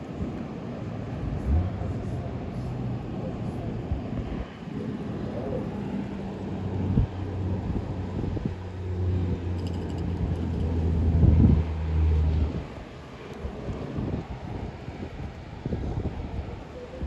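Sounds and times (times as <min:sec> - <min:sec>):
vehicle engine humming: 0:00.8 - 0:14.4.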